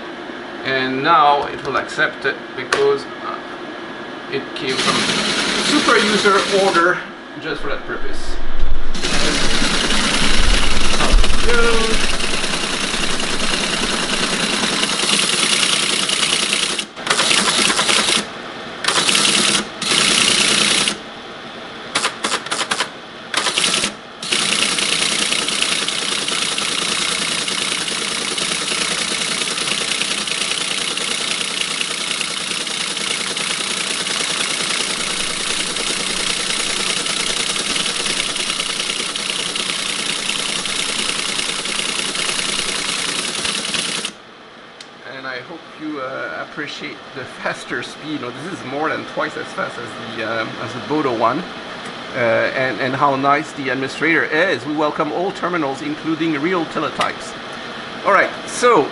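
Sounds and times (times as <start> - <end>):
motor hum: 4.3 - 45.0
teletype printer clatter: 4.7 - 6.8, 9.0 - 21.0, 22.0 - 44.2.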